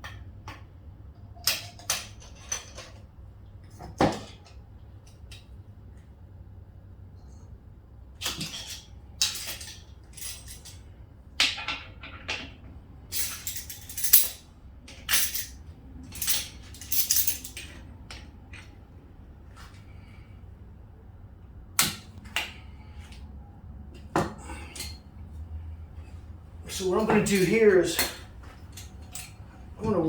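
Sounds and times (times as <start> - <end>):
metal tools clattering: 1.2 - 3.1, 8.3 - 18.8, 26.7 - 30.0.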